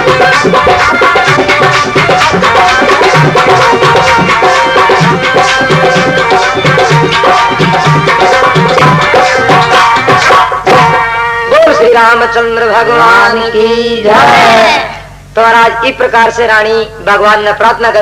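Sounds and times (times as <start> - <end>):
hand drum beat: 0.0 - 11.1
sustained melodic tones: 0.0 - 13.8.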